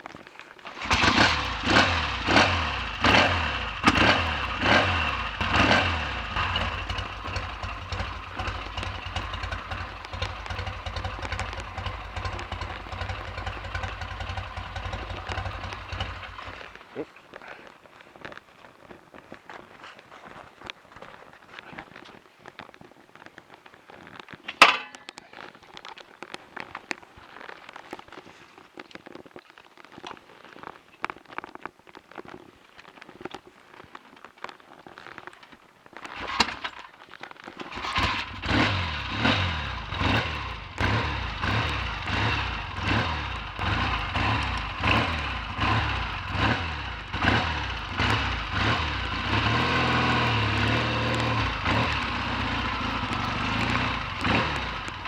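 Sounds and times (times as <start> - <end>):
clicks: 0.2 - 16.9
motorcycle engine running: 0.6 - 17.0, 37.7 - 55.0.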